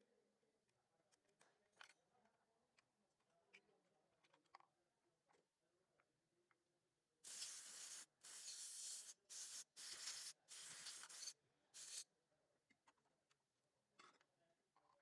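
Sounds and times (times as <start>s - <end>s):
aerosol spray hissing: 7.3s - 12.0s.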